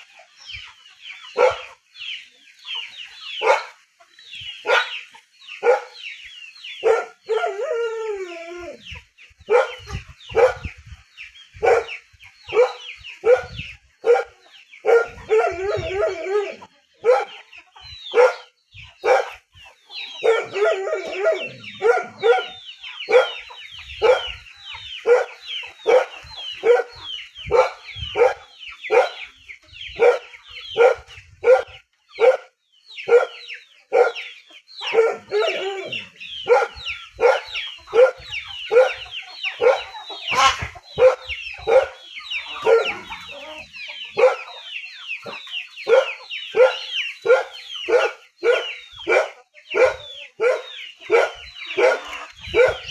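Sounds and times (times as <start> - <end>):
dog barking: 1.4 - 1.8, 3.4 - 3.8, 4.6 - 5.0, 5.6 - 6.0, 6.8 - 7.5, 9.5 - 10.7, 11.6 - 17.4, 18.1 - 19.4, 20.1 - 23.4, 24.0 - 24.4, 25.0 - 29.2, 30.0 - 42.0, 42.6 - 43.2, 44.2 - 44.6, 45.8 - 52.9.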